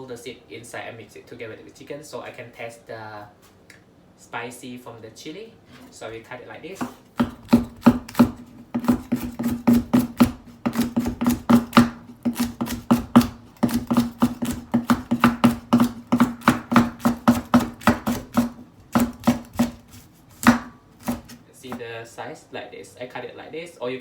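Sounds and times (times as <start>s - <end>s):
knife chopping on cutting board: 6.8s - 21.8s.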